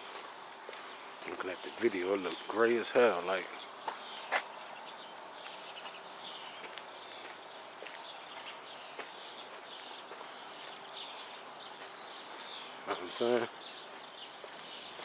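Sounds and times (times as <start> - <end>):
outdoor background hiss: 0.0 - 15.0
small bird chirps: 3.5 - 15.0.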